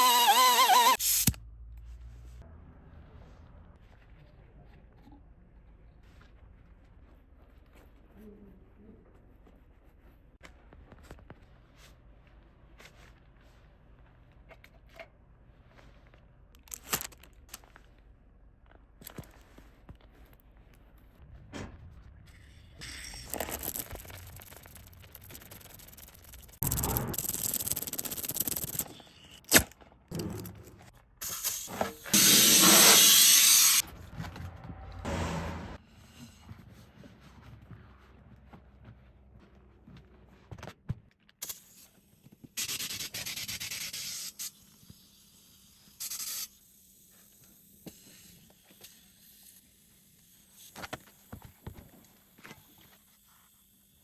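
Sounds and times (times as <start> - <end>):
tool scraping and rubbing: 0.0 - 1.4, 22.8 - 29.5, 30.1 - 34.0
faint clicks and scrapes: 3.1 - 29.4.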